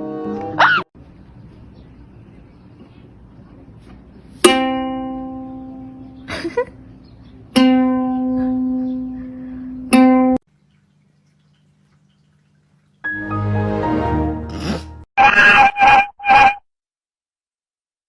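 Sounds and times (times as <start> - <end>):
plucked string instrument low note: 7.6 - 10.4.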